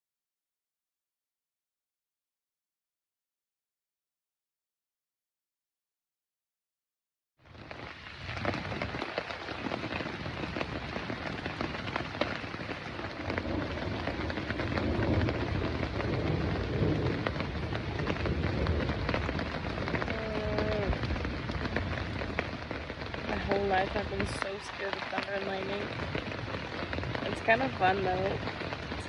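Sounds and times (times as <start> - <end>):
heavy rain falling: 7.4 - 29.0
raindrops striking close by: 7.4 - 29.0
thunder rumbling: 7.5 - 29.0.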